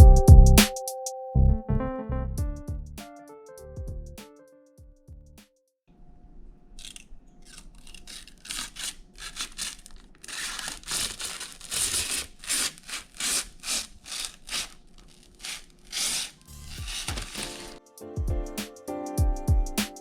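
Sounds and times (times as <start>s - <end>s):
rhythmic scratchy rubbing: 16.0s - 20.0s.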